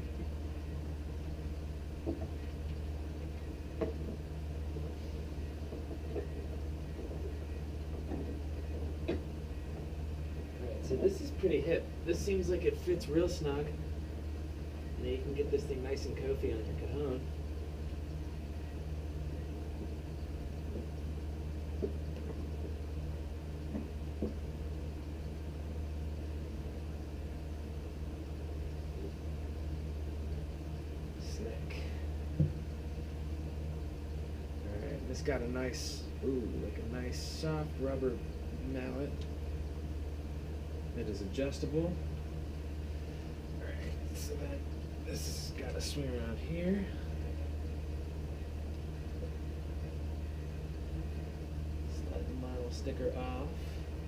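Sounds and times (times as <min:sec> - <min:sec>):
steady low hum: 0:00.0 - 0:54.0
faint knocks and clicks: 0:02.0 - 0:05.0, 0:05.6 - 0:10.0, 0:20.6 - 0:22.8, 0:23.6 - 0:24.4.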